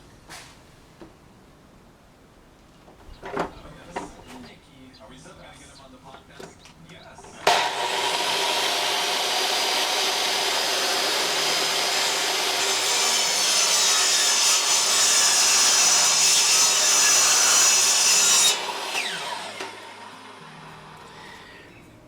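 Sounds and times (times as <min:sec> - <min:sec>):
miter saw cutting wood: 0:07.3 - 0:21.6
saw motor winding down: 0:07.4 - 0:13.3, 0:15.6 - 0:21.6.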